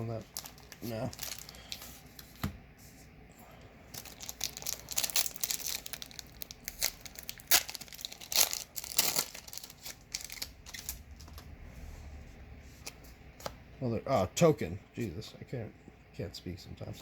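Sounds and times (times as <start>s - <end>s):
foil wrapper tearing and crinkling: 0.0s - 1.8s, 4.0s - 11.2s.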